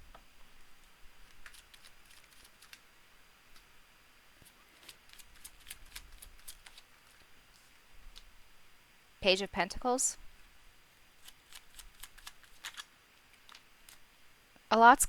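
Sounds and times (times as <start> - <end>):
cards being shuffled: 1.2 - 2.9, 4.4 - 8.3, 11.2 - 14.1.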